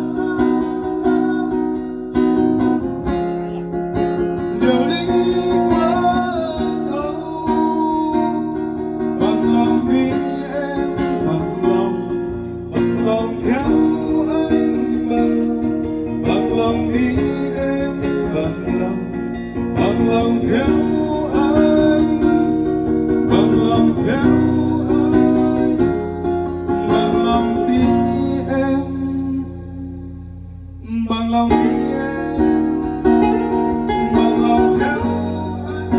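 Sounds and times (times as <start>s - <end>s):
bass line: 0.0s - 35.9s
song with plucked acoustic guitar: 0.0s - 35.9s.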